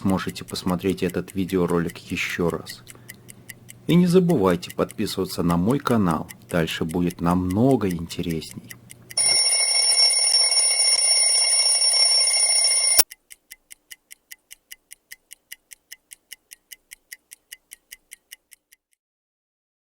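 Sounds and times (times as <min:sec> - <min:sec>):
clock ticking: 0:00.0 - 0:19.0
alarm clock ringing: 0:09.2 - 0:13.0.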